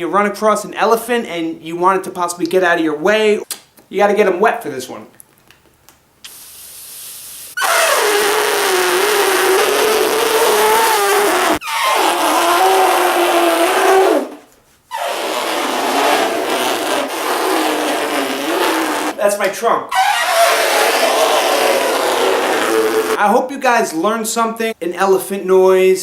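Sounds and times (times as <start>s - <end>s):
man imitating elephant trumpeting: 7.6s - 19.3s, 19.9s - 23.2s.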